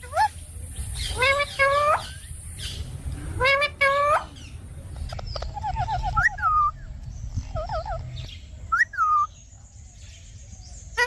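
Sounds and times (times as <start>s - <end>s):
parrot chattering and whistling: 0.0s - 2.4s, 3.4s - 6.8s, 7.5s - 9.3s.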